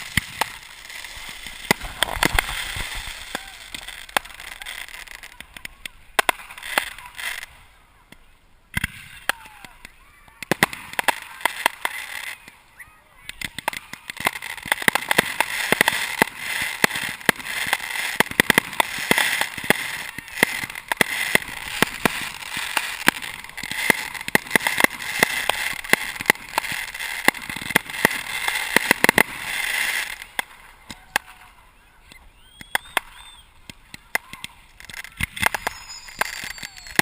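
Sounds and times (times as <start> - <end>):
fireworks crackling and popping: 0.0 - 37.0
faint squeals: 30.9 - 33.5, 34.9 - 37.0.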